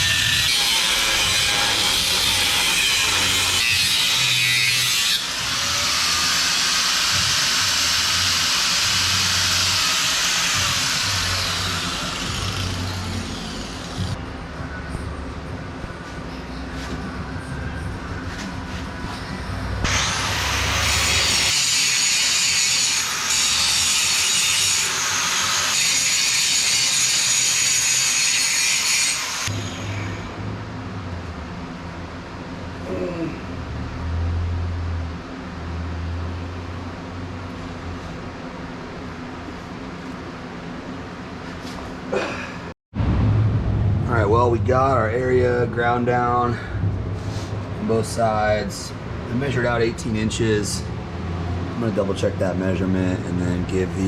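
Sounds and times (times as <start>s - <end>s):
angle grinder grinding steel: 0.0s - 14.2s, 19.8s - 30.2s.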